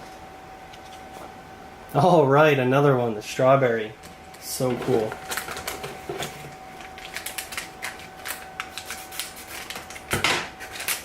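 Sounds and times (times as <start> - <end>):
plastic packaging crinkling: 4.6 - 11.0.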